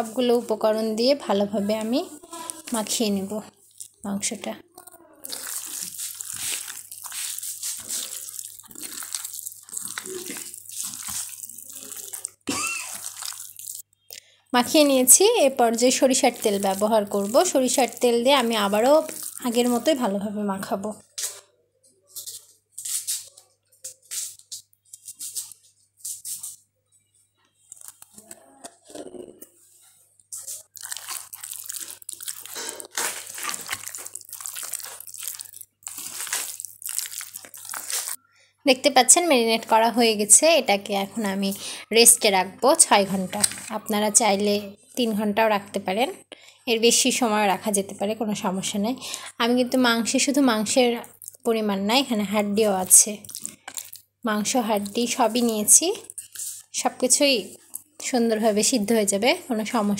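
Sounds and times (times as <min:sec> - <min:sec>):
hands squelching wet meat: 0:05.2 - 0:13.9, 0:14.9 - 0:20.1, 0:30.3 - 0:38.2, 0:52.6 - 0:55.7.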